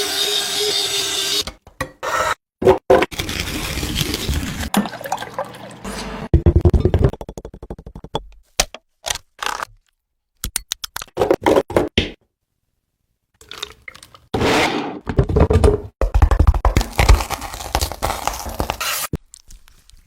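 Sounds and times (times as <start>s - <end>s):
crunching and scraping handling: 16.8s - 20.0s.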